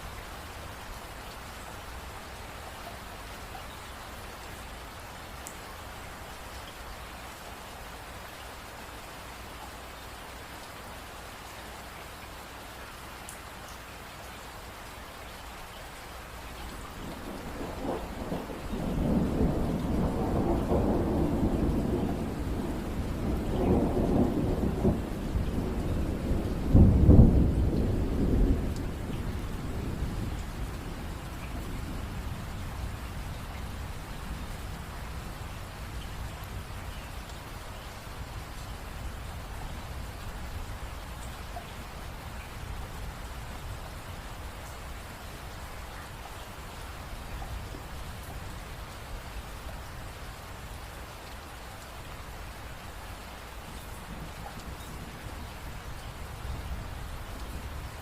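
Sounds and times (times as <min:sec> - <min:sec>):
steady rain: 0:00.0 - 0:58.0
thunder rolling: 0:17.1 - 0:32.4.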